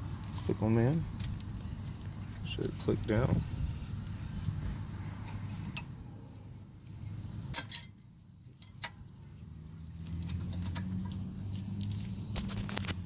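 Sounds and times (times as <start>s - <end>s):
metal clips clinking and clicking: 7.5s - 9.0s.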